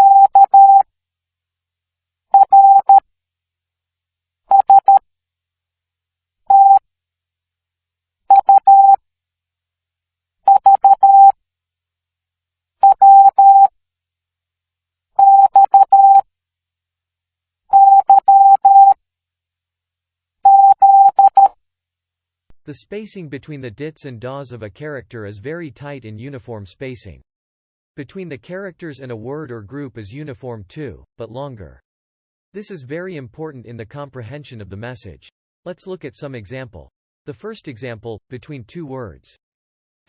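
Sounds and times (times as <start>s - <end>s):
morse code beeps: 0.0s - 0.8s, 2.4s - 3.0s, 4.5s - 5.0s, 6.5s - 6.8s, 8.3s - 9.0s, 10.5s - 11.3s, 12.8s - 13.7s, 15.2s - 16.2s, 17.7s - 19.0s, 20.5s - 21.5s.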